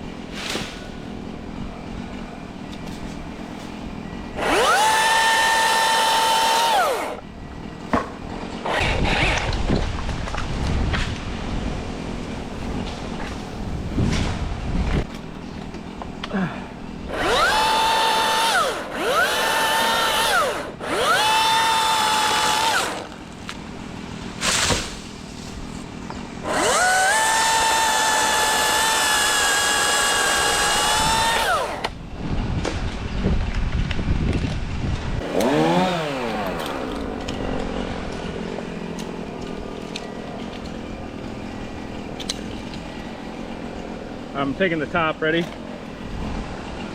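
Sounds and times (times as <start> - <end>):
chainsaw whining: 4.4 - 7.2, 8.6 - 9.6, 17.1 - 23.2, 26.4 - 31.9, 35.2 - 38.2.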